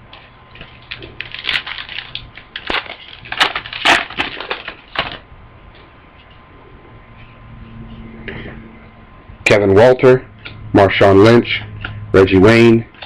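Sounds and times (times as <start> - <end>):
card pack wrapper crinkling: 0.6 - 5.2.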